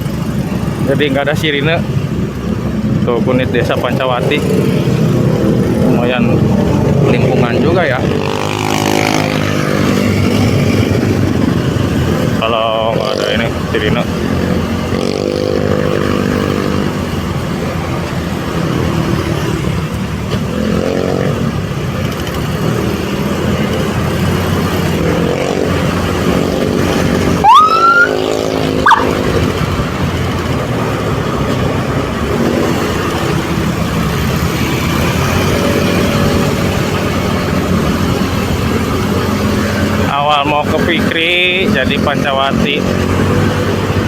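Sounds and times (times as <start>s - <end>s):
vehicle engine and road noise: 0.0s - 44.0s
siren whoop: 27.4s - 29.4s.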